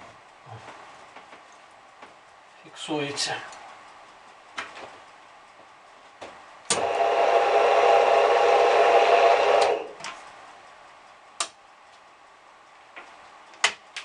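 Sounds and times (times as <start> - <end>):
drill press switch click: 6.7 - 7.0
drill press motor running: 6.7 - 10.1.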